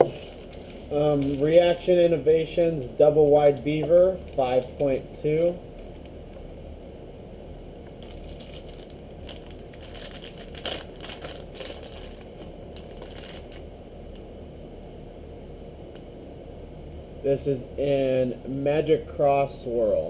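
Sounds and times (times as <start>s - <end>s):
plastic packaging crinkling: 0.0s - 2.0s, 8.0s - 13.7s
steady low hum: 0.0s - 20.0s.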